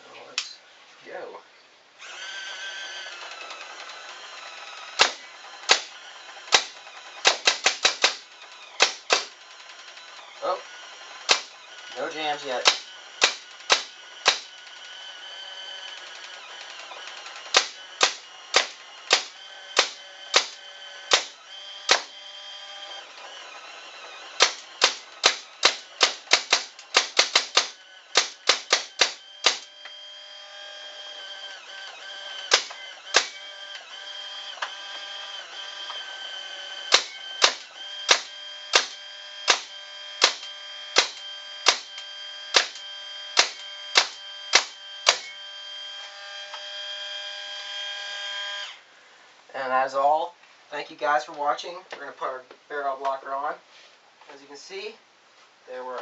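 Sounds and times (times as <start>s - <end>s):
paintball gun shots: 4.9s - 9.4s, 11.3s - 11.6s, 12.6s - 14.5s, 17.5s - 22.2s, 24.4s - 29.7s, 32.5s - 33.4s, 36.9s - 42.8s, 43.4s - 45.3s.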